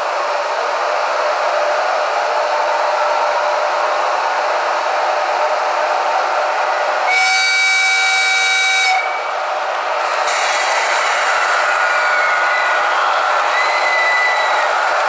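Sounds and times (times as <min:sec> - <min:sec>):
locomotive running hiss: 0:00.0 - 0:15.0
locomotive horn blast: 0:07.1 - 0:09.3.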